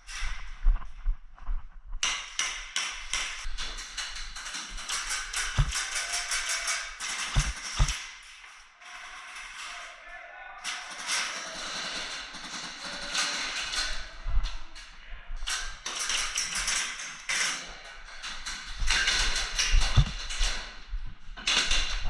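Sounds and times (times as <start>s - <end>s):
dull thumps: 7.3s - 8.0s, 19.9s - 20.2s
light taps: 7.3s - 8.0s.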